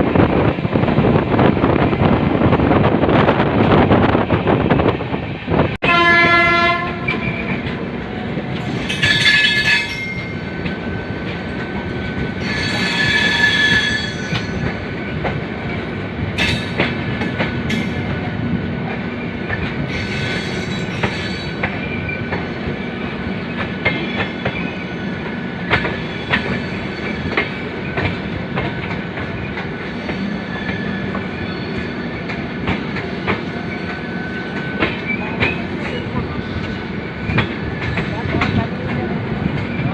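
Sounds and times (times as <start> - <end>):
train wheels rumbling and clattering: 0.0 - 39.9
train horn blast: 5.8 - 7.4
high wheel squeals: 12.4 - 14.6.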